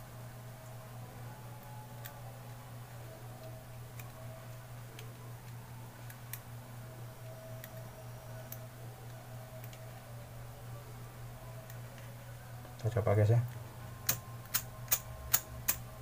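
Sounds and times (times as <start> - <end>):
low hum: 0.0 - 16.0.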